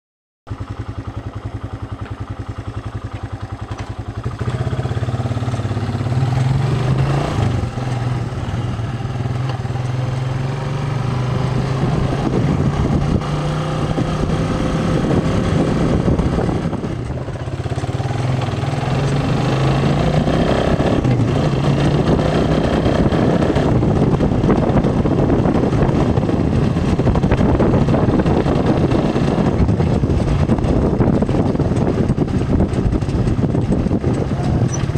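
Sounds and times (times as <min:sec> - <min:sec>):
engine running steadily: 0:00.5 - 0:34.9.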